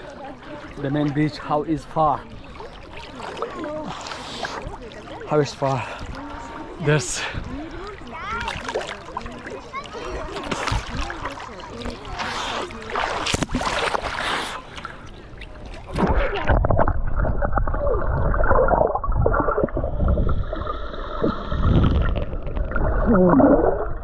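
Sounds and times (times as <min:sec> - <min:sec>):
water splashing: 0:00.0 - 0:24.0
muffled underwater gurgling: 0:15.8 - 0:24.0.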